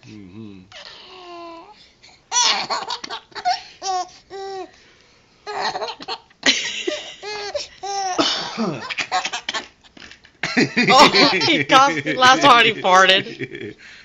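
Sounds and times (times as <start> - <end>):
baby laughing: 2.3 - 4.7, 5.5 - 6.3, 6.9 - 9.8, 10.9 - 12.7
man coughing: 8.2 - 9.4.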